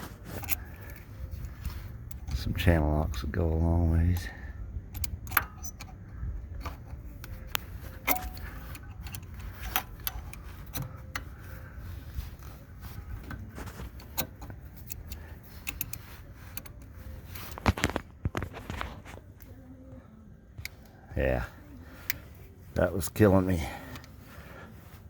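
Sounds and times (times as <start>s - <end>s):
metallic clicks of hand tool: 4.9s - 11.3s.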